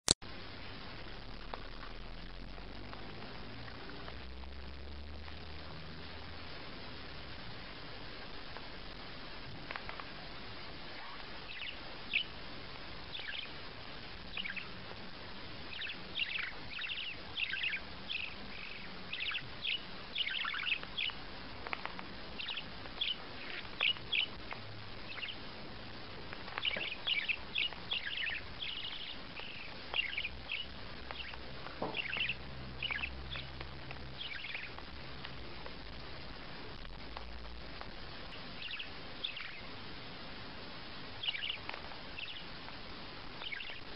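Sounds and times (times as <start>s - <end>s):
background hiss: 0.2s - 43.9s
small bird chirping: 9.6s - 36.0s, 36.7s - 39.8s, 41.1s - 43.9s.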